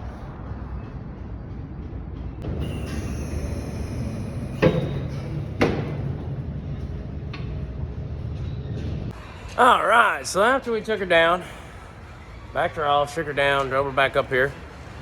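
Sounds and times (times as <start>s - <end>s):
low machine rumble: 0.0s - 9.4s
sharp knocks: 4.6s - 6.4s.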